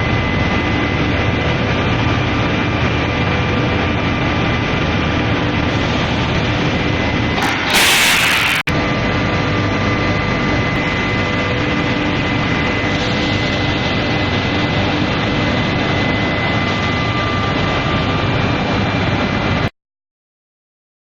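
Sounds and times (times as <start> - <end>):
machine noise: 5.7 - 8.9
high whining tones: 7.2 - 8.7.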